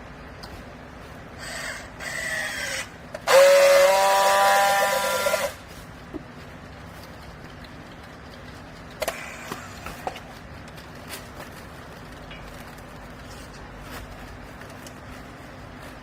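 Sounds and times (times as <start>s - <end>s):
hydraulic press whine with hiss: 1.4s - 5.6s.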